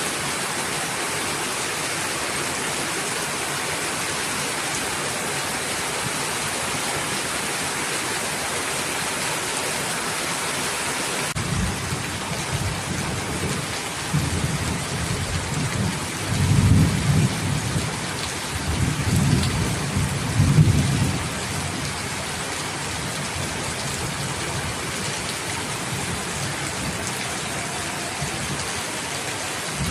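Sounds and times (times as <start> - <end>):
heavy rain: 0.0 - 29.9
thunder rumbling: 25.8 - 29.9.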